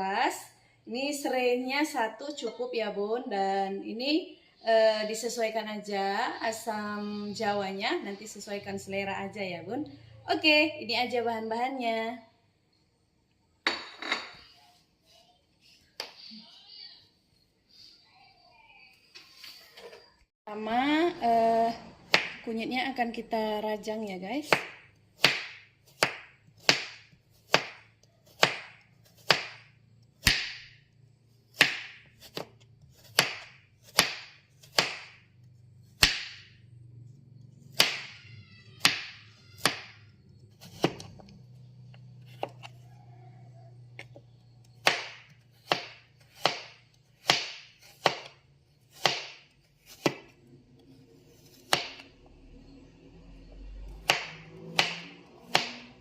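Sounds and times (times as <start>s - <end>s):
knife slicing root: 44.8s - 50.3s.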